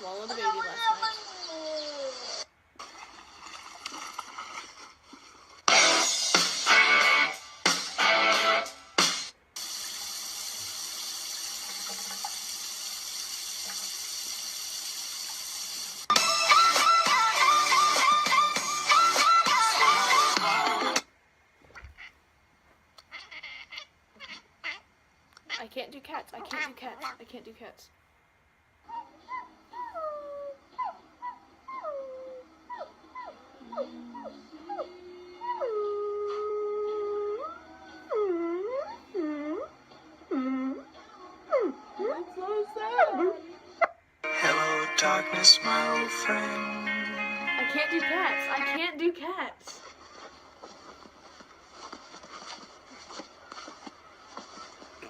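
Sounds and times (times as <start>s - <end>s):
tap water running: 9.6s - 16.1s.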